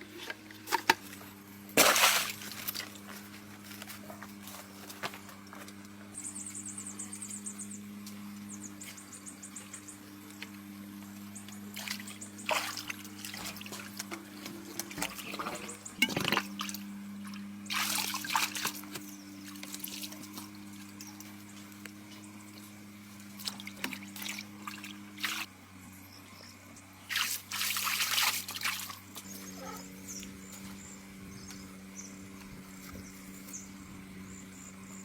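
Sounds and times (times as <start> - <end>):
water splashing and trickling: 1.8 - 3.0, 11.7 - 21.3, 22.5 - 25.5, 27.1 - 29.3.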